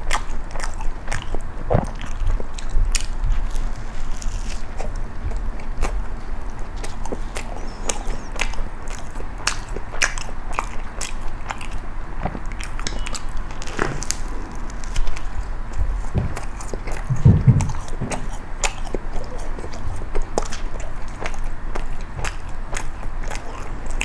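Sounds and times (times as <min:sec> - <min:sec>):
crunchy bites and chewing: 0:00.0 - 0:24.0
crisp crackles: 0:03.0 - 0:05.1
dull low thump: 0:15.8 - 0:18.4.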